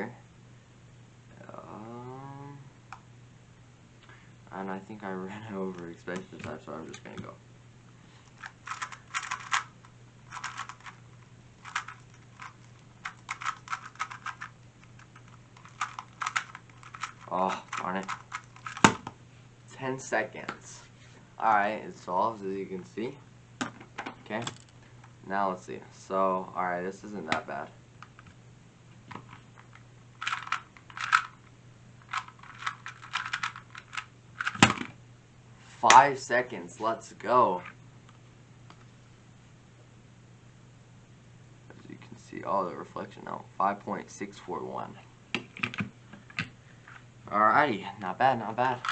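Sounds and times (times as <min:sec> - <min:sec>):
puzzle cube plastic clicks: 0:08.3 - 0:09.7, 0:10.3 - 0:11.0, 0:11.6 - 0:19.0, 0:29.2 - 0:31.4, 0:32.0 - 0:34.9.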